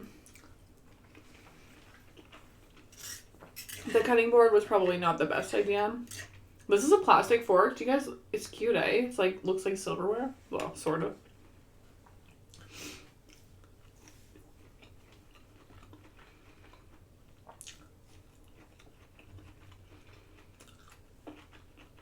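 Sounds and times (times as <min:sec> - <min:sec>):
faint chewing with wet clicks: 0:00.2 - 0:03.6, 0:11.2 - 0:22.0.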